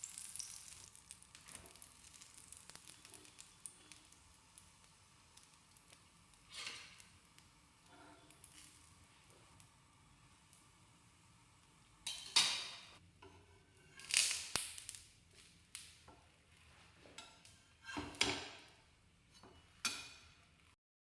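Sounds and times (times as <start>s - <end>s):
kitchen scrapes: 6.5s - 7.0s, 7.8s - 8.8s, 12.1s - 14.2s, 16.5s - 18.7s, 19.3s - 20.4s
dishes and utensils clinking: 12.0s - 14.0s, 17.0s - 18.7s, 19.3s - 20.4s.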